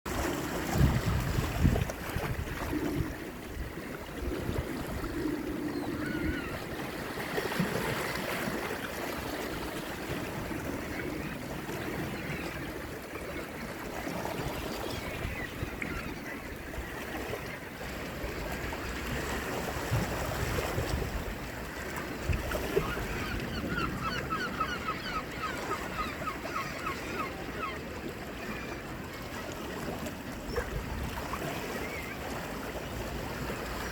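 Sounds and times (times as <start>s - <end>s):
waves washing on shore: 0.1s - 26.1s
bird calls: 5.1s - 6.6s, 22.8s - 27.8s.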